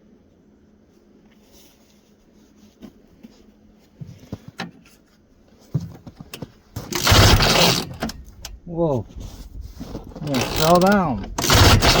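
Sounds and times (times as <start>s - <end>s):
snowmobile recoil starter pulled: 6.3s - 8.6s, 9.8s - 12.0s
engine turning over: 6.8s - 8.5s, 9.9s - 12.0s
loud clattering crash: 6.9s - 8.2s, 10.2s - 12.0s.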